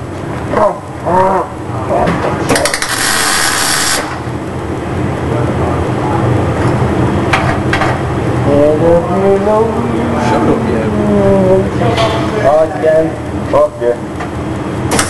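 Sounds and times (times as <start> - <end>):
low hum of workshop equipment: 0.0 - 15.0
welding crackling hiss: 2.6 - 4.2.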